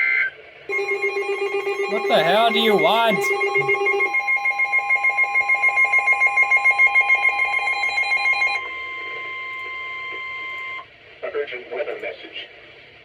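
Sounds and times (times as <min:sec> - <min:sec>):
steady warning alert tone: 0:00.7 - 0:06.6
rapid pulsing electronic alarm beeps: 0:00.7 - 0:08.6.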